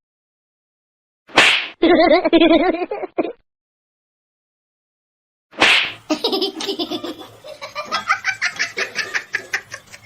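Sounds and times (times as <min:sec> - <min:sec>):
person laughing hard: 0:01.8 - 0:03.4, 0:06.1 - 0:10.0.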